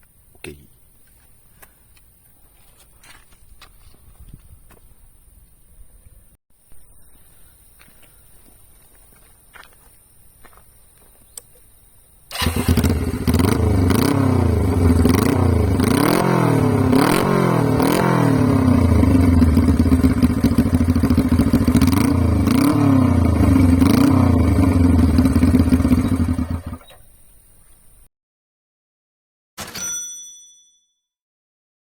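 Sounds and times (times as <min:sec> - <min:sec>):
motorcycle engine revving: 0:12.3 - 0:26.9.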